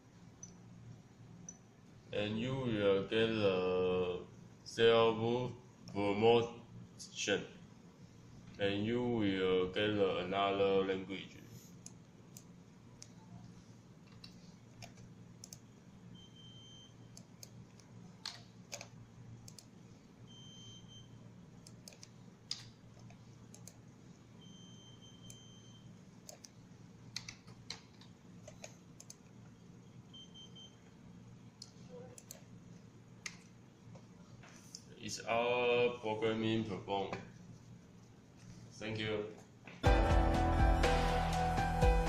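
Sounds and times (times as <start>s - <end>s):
low steady hum: 0.0s - 42.0s
faint high beeps: 16.1s - 17.2s, 20.2s - 21.2s, 24.4s - 26.0s, 29.8s - 31.0s.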